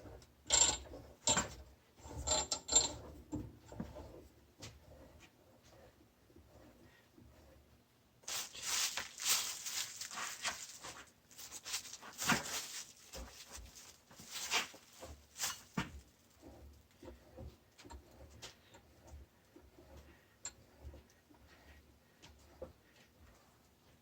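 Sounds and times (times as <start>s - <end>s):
hand tools clicking and clattering: 8.3s - 16.5s.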